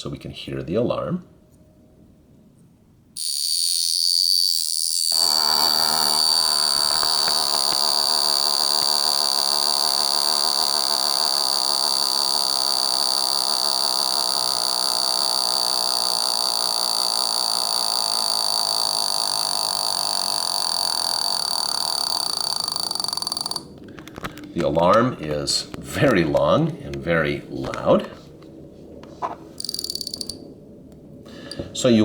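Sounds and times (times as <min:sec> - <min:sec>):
alarm clock ringing buzz: 0:03.2 - 0:23.7, 0:29.6 - 0:30.4.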